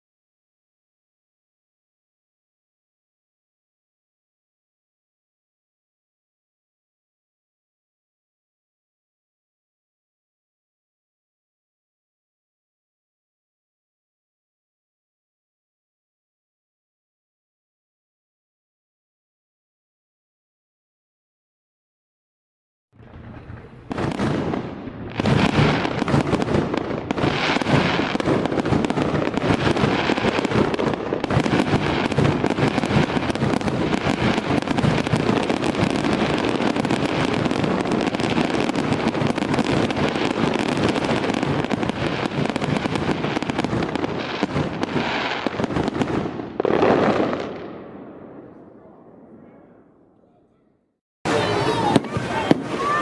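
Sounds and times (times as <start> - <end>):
fireworks bangs and crackles: 23.0 - 49.8, 51.3 - 53.0.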